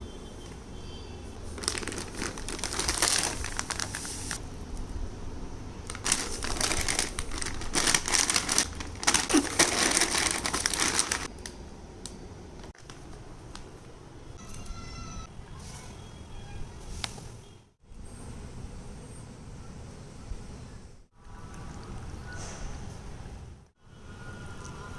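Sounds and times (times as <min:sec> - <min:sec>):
crinkling rustling handling noise: 0:01.4 - 0:04.5, 0:05.9 - 0:11.6.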